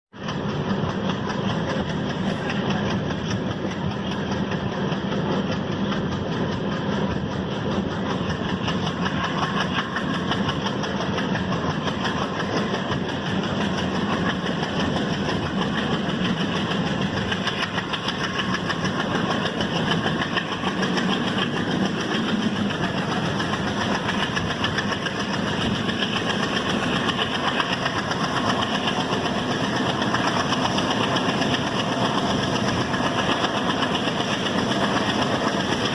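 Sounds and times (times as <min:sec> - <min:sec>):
diesel locomotive engine chugging: 0:00.1 - 0:35.9.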